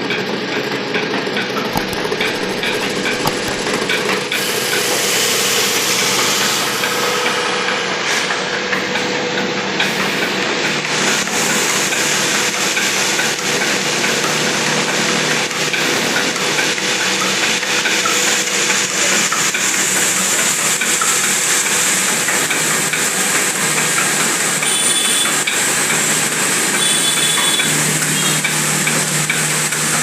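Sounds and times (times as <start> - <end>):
grain mill rattling: 1.6 - 4.2
motor humming: 1.6 - 4.3.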